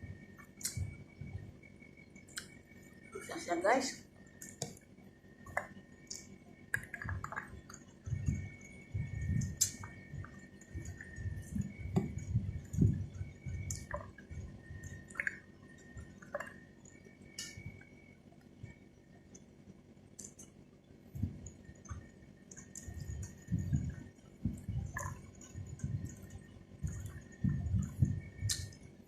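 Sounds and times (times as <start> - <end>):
person chewing wetly: 5.4 - 12.9, 13.5 - 17.8, 20.2 - 20.6, 21.4 - 28.8.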